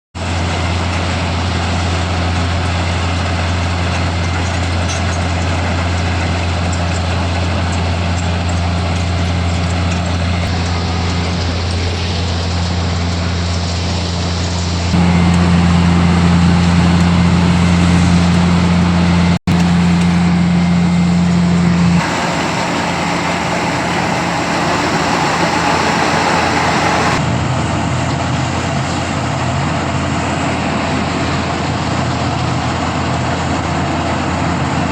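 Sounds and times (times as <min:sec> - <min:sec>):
milling machine humming: 0:10.2 - 0:27.2.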